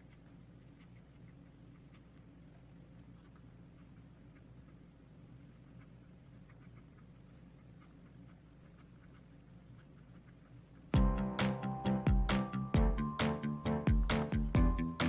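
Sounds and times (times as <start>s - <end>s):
low room hum: 0.0s - 15.0s
loud music with strong beat: 11.0s - 15.0s.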